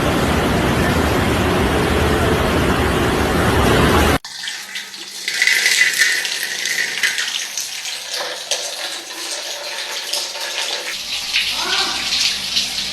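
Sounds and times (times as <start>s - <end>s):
water running and splashing: 4.2s - 12.9s.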